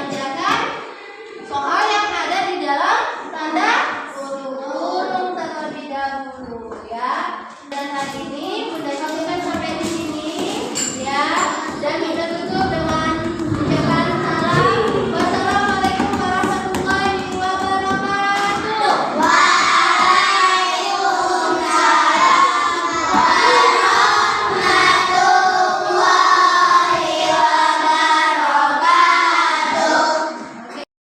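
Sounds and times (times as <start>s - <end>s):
children singing: 3.5s - 5.9s, 9.0s - 30.9s.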